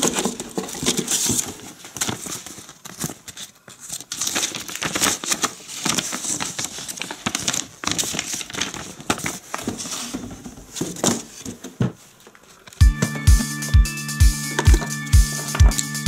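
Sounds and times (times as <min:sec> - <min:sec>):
packaging crinkling: 0:00.0 - 0:11.5.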